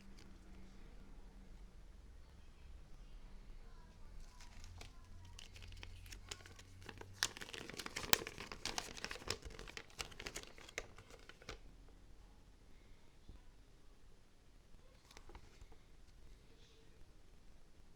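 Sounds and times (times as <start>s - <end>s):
packaging crackling: 4.2s - 11.6s
packaging handling noise: 4.2s - 11.6s.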